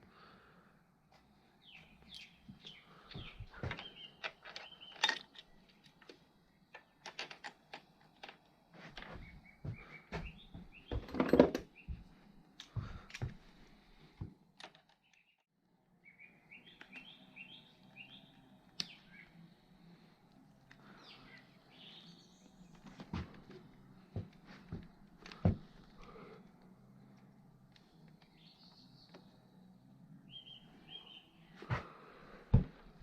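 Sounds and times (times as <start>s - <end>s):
small bird chirping: 1.6s - 5.8s, 16.0s - 19.8s, 20.8s - 24.1s, 27.0s - 31.6s
hand tools clicking and knocking: 10.9s - 11.7s.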